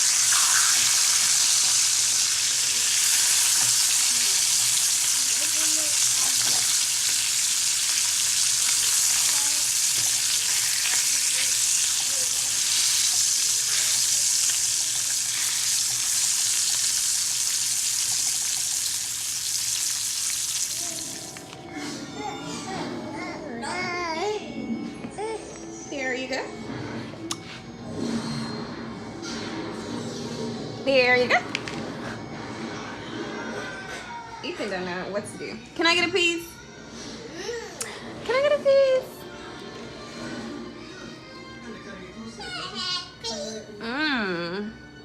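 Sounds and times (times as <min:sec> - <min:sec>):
sausages sizzling in a pan: 0:00.0 - 0:21.5.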